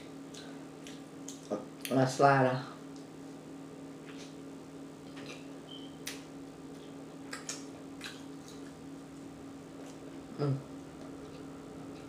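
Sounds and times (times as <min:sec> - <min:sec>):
faint steady hum: 0:00.0 - 0:12.0
chewing and lip smacking: 0:00.3 - 0:02.0, 0:06.0 - 0:10.1.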